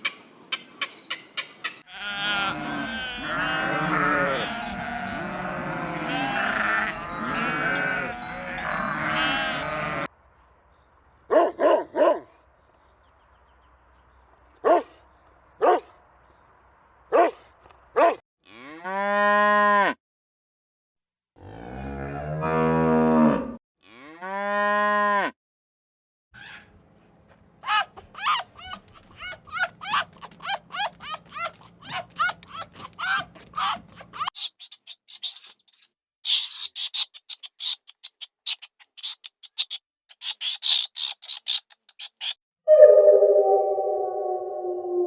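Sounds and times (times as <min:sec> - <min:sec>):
cattle mooing: 0:01.9 - 0:10.1.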